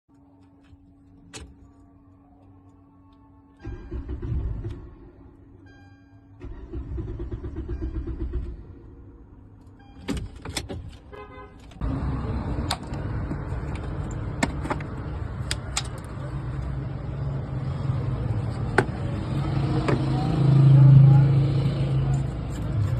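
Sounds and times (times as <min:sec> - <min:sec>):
car engine cranking and running: 0:03.6 - 0:05.4, 0:06.4 - 0:11.0, 0:11.7 - 0:22.9.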